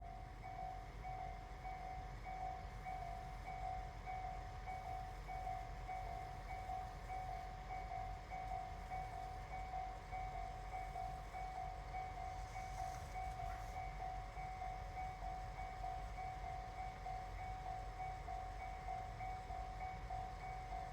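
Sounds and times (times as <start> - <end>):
level crossing warning bell ringing: 0.1 - 20.9.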